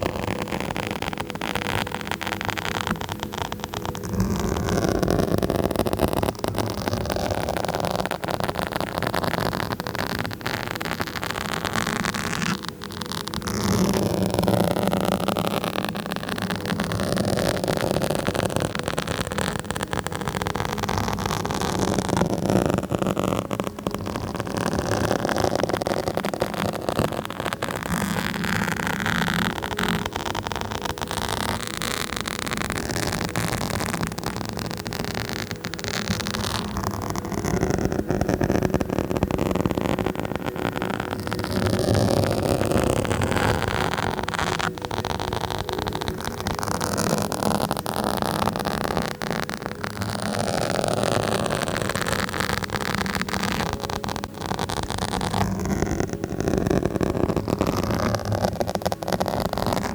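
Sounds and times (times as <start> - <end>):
fingers scratching on microphone: 0.0 - 59.9.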